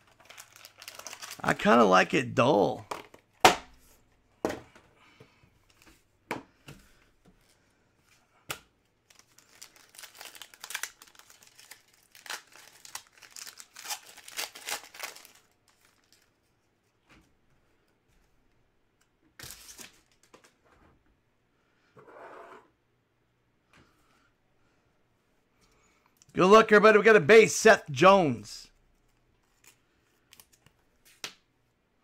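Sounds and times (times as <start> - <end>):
wrappers crinkling and tearing: 0.0 - 1.7, 9.0 - 16.5
packaging snapping: 9.4 - 15.5.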